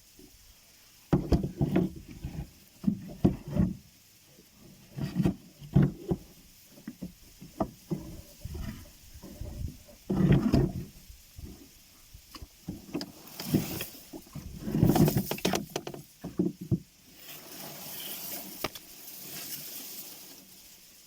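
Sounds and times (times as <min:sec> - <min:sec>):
hollow knocks inside a boat: 0:01.1 - 0:03.8, 0:04.9 - 0:11.7, 0:14.2 - 0:17.0.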